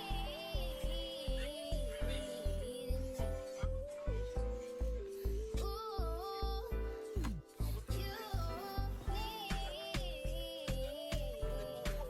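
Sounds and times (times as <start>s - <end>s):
background music with deep beat: 3.0s - 12.0s.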